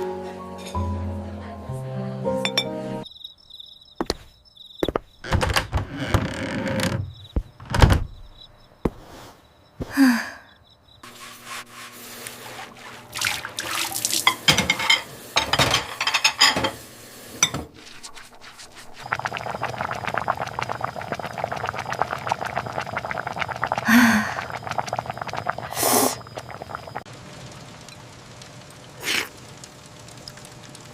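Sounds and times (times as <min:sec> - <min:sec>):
knocks and thunks: 0:04.0 - 0:09.0
water sounds: 0:11.0 - 0:15.5, 0:16.7 - 0:30.9
rain pattering: 0:18.9 - 0:30.9.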